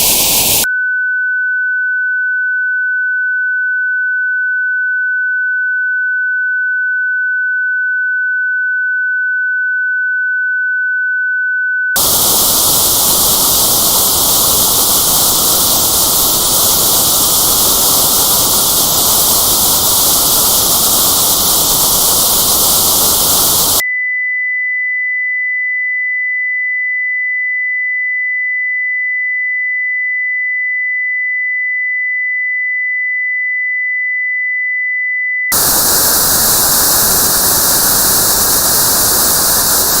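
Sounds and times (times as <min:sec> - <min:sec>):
loud white noise: 0:00.0 - 0:00.7, 0:12.0 - 0:23.8, 0:35.5 - 0:40.0
pure test tone: 0:00.0 - 0:00.7, 0:12.0 - 0:23.8.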